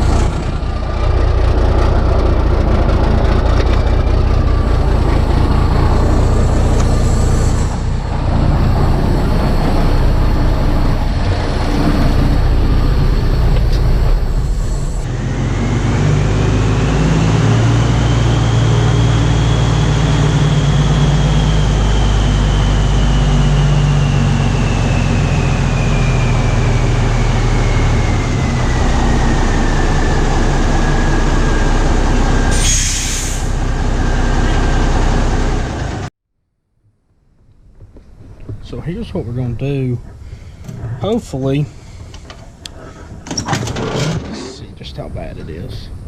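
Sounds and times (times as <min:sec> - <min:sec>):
truck diesel engine whining: 0:00.0 - 0:36.1
air brake hiss: 0:32.5 - 0:33.6.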